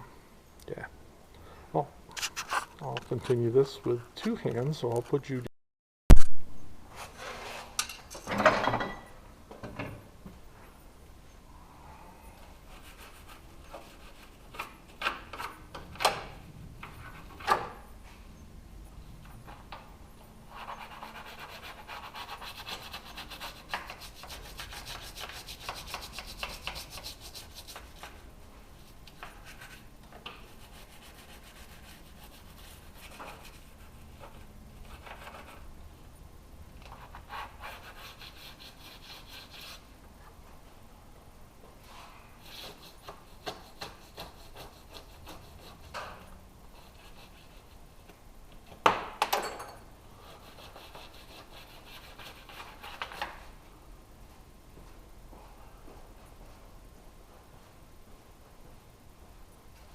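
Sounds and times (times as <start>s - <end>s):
hand tools scraping: 2.2s - 3.4s.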